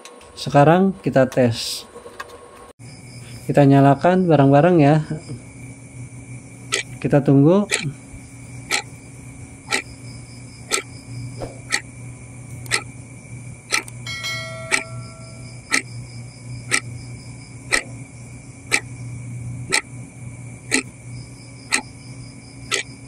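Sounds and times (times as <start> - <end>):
low steady hum: 2.8 - 23.0
clock ticking: 7.7 - 7.9, 13.7 - 15.9
multi-tone clock chime: 14.0 - 15.4.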